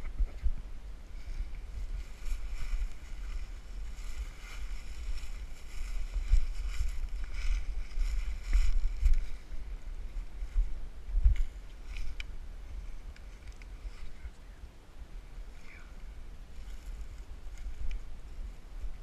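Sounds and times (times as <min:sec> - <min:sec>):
wind buffeting microphone: 0:00.0 - 0:14.2.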